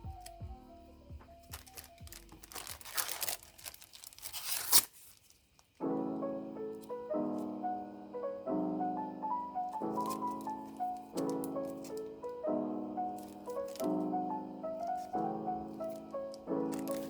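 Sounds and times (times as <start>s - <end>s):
piano music: 0.0s - 4.3s, 5.8s - 17.0s
packaging being torn and crinkled: 1.5s - 5.8s, 9.8s - 12.4s, 13.0s - 17.0s.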